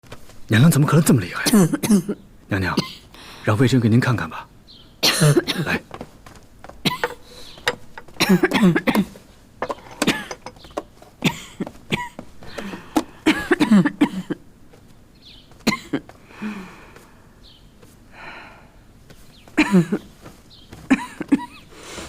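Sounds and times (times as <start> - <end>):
woman coughing hard: 1.5 - 2.2, 5.0 - 5.8, 6.8 - 7.3, 8.2 - 9.2, 9.9 - 10.5, 11.2 - 12.2, 13.2 - 14.4, 15.6 - 16.1, 19.6 - 20.1, 20.9 - 21.6.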